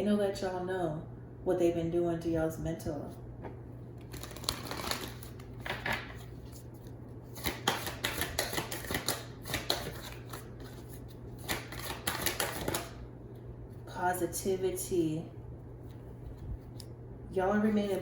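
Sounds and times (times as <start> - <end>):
cards being shuffled: 4.0 - 13.0.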